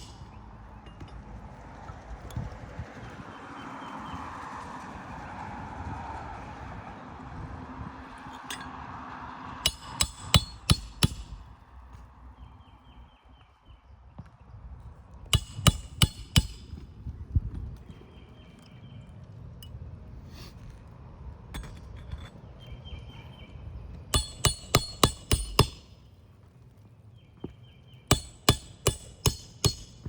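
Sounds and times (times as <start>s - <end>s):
hammer striking nails: 0.0s - 0.3s, 9.6s - 11.4s, 15.3s - 16.8s, 24.2s - 25.9s, 28.1s - 30.0s.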